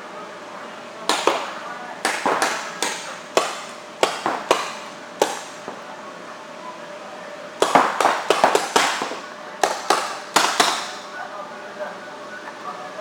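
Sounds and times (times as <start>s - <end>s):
paintball marker shots popping: 1.1s - 5.8s, 7.6s - 11.0s.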